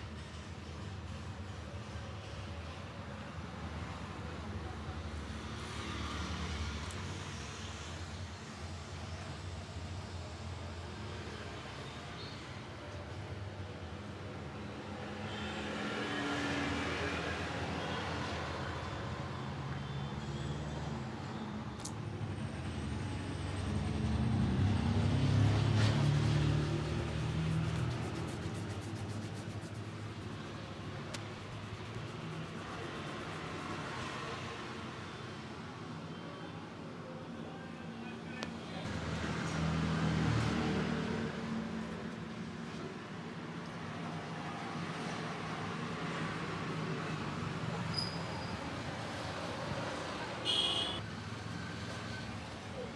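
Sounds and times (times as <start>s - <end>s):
vehicle engines running: 22.4s - 34.9s.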